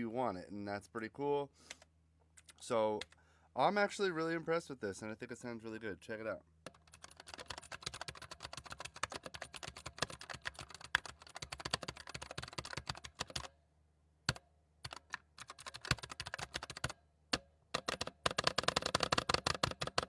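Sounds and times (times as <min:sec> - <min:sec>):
mechanical keyboard typing: 0:06.7 - 0:13.5, 0:14.3 - 0:17.0, 0:17.7 - 0:20.0.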